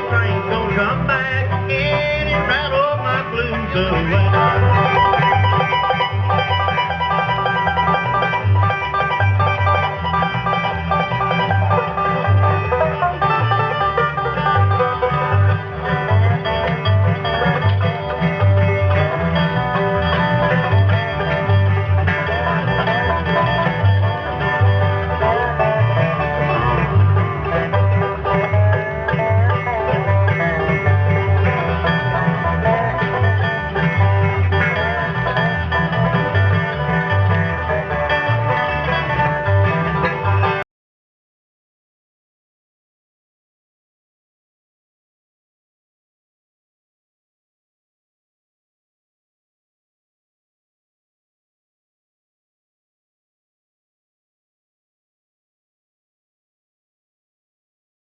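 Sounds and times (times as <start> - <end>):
bluegrass band playing: 0.0 - 40.6
guitar: 0.0 - 40.6
pulsing bass: 0.0 - 40.6
banjo picking: 0.0 - 40.7.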